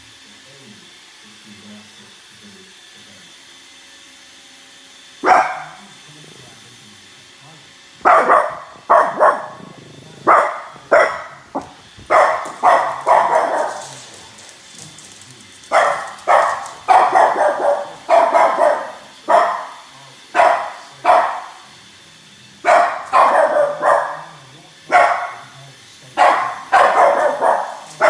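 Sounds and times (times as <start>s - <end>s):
dog barking: 5.2s - 5.9s, 8.0s - 14.4s, 15.7s - 21.7s, 22.6s - 25.6s, 26.2s - 28.0s.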